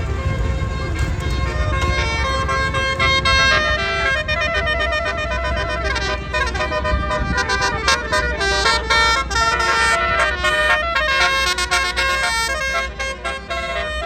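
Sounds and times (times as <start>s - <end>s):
multi-tone musical air horn: 0.0s - 14.0s.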